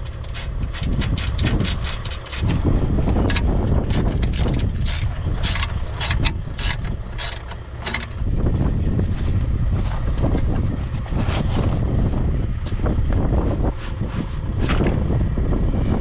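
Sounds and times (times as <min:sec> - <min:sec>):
steady low rumble: 0:00.0 - 0:16.0
hand ratchet clicking: 0:03.2 - 0:08.2.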